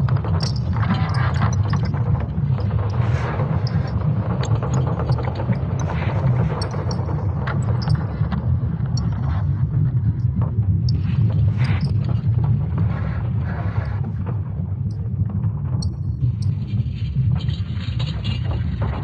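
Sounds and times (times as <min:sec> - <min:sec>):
crackles: 0:00.0 - 0:09.5
deep rumble: 0:00.0 - 0:17.8.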